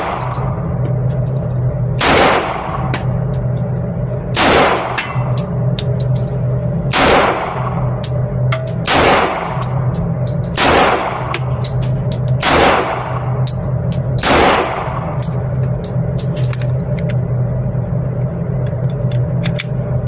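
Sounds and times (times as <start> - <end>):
pistol shots with ringing tail: 0.0 - 0.7, 1.9 - 3.6, 4.3 - 6.0, 6.9 - 13.4, 14.0 - 15.4
steady low hum: 0.0 - 20.0.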